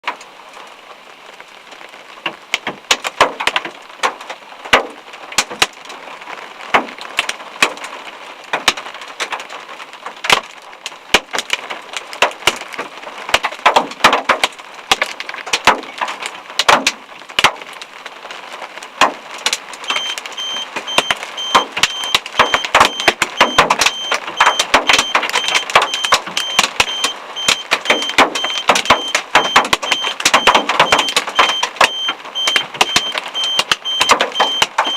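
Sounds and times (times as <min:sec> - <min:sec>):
hailstones striking hard surfaces: 0:02.2 - 0:06.0, 0:06.7 - 0:18.1, 0:18.8 - 0:34.9
rapid high electronic beeping: 0:19.9 - 0:34.9.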